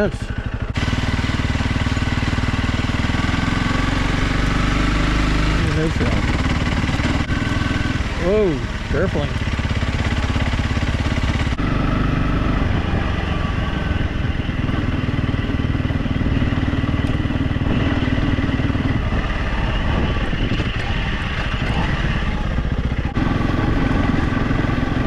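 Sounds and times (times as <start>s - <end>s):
motorcycle engine running: 0.0s - 25.0s.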